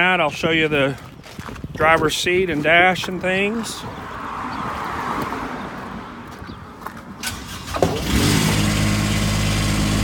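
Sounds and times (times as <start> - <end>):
small motor starting and idling: 7.2 - 10.0.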